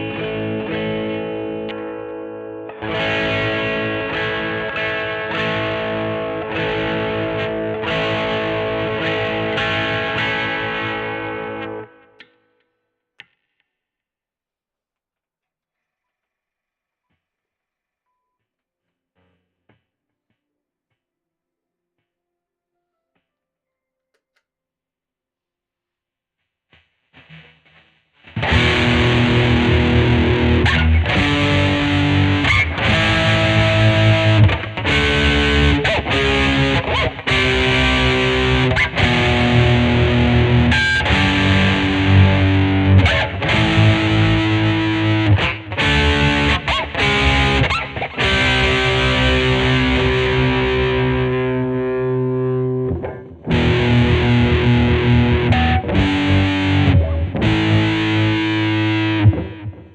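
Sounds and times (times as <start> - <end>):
distorted electric guitar: 0.0 - 12.4, 26.7 - 59.9.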